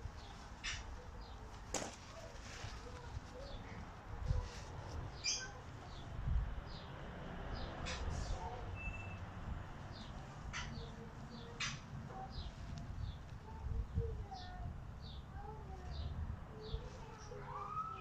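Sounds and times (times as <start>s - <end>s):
birds chirping: 5.1s - 6.9s, 7.6s - 18.0s.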